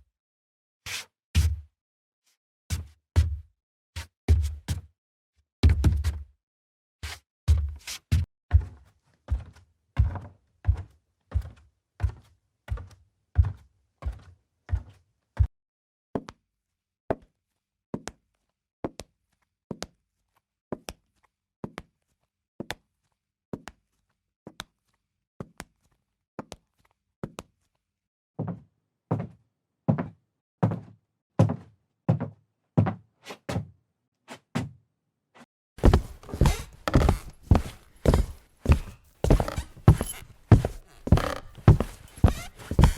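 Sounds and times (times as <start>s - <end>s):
footsteps on wooden floor: 35.8s - 42.9s.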